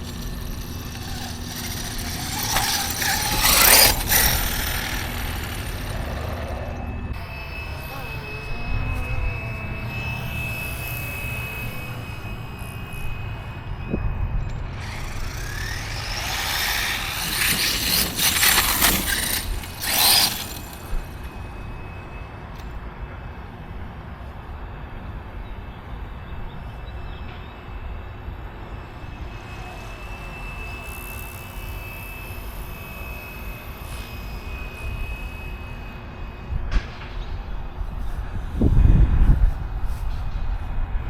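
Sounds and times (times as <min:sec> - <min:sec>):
electric motor whining: 0:00.0 - 0:22.8, 0:28.9 - 0:36.7
tire and ground noise: 0:00.0 - 0:41.0.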